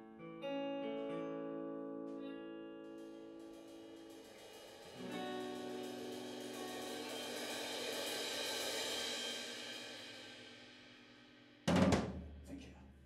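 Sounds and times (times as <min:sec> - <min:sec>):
rock band holding a chord: 0:02.9 - 0:11.0
cymbal roll: 0:03.0 - 0:11.6.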